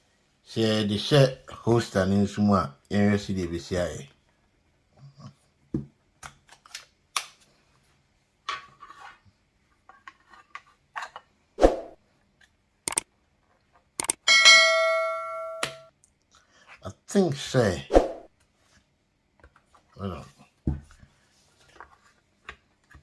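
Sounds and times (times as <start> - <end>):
phone being handled clicks: 14.0 - 14.3
metallic ringing strike: 14.3 - 15.9.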